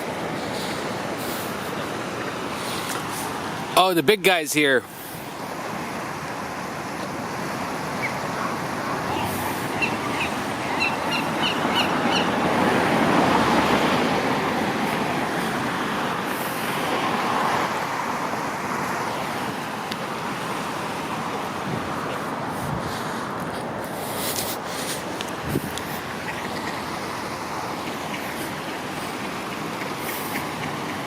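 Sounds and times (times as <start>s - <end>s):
road traffic rushing: 0.0s - 31.0s
bird chirping: 8.0s - 12.3s.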